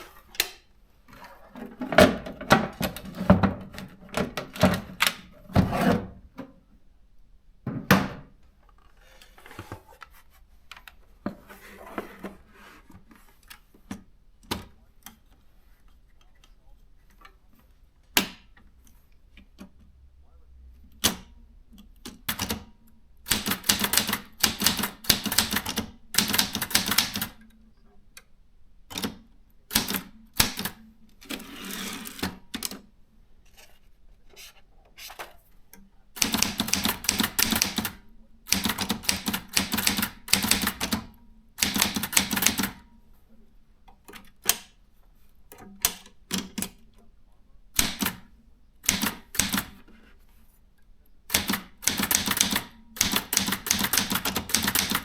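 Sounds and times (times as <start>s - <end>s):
continuous typewriter mechanical sound: 20.9s - 27.5s, 28.9s - 32.8s, 36.2s - 42.9s, 45.5s - 46.9s, 47.7s - 49.9s, 51.3s - 55.0s
typewriter key strikes: 23.3s - 27.4s, 36.2s - 42.8s, 48.8s - 49.8s, 51.3s - 55.0s.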